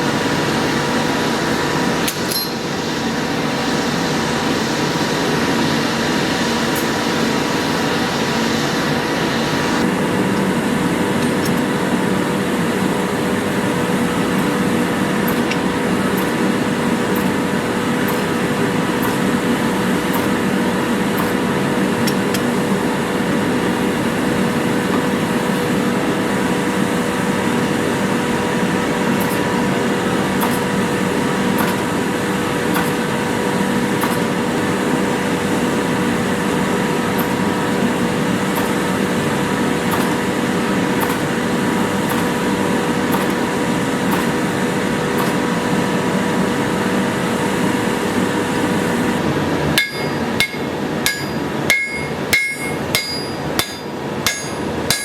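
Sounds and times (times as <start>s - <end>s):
hammer ringing on anvil: 2.1s - 2.7s, 49.8s - 55.0s.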